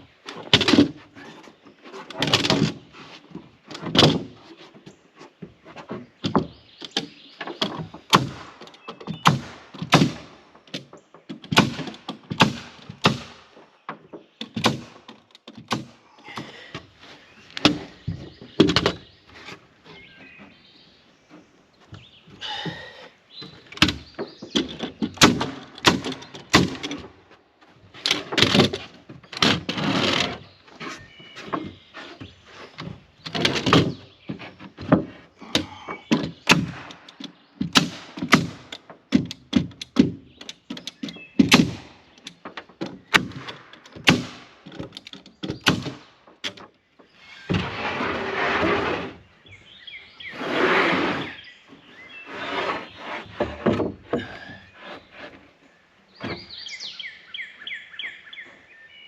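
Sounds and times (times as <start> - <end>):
wooden boards knocking: 17.6 - 19.1, 22.4 - 27.2, 30.8 - 46.7, 53.0 - 54.7.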